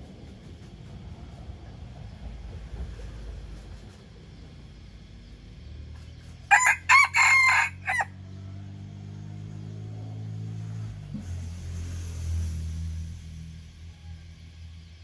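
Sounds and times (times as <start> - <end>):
rooster crowing: 6.5 - 8.2.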